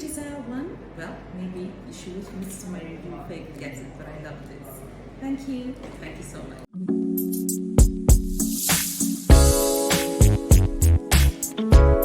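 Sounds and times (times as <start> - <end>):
synth chords: 6.8 - 12.0
drum hits: 7.8 - 12.0.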